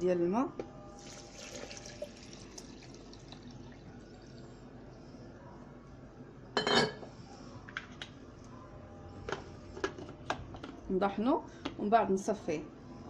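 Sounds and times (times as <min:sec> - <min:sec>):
water pouring into vessel: 0:01.0 - 0:04.5.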